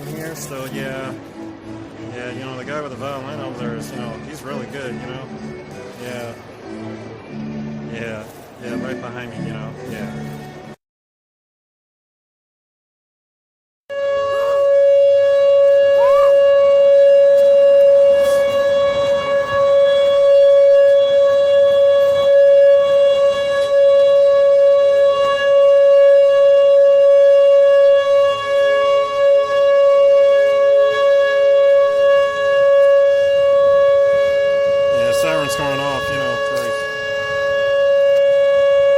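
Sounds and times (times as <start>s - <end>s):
warning siren steady tone: 13.9s - 38.9s.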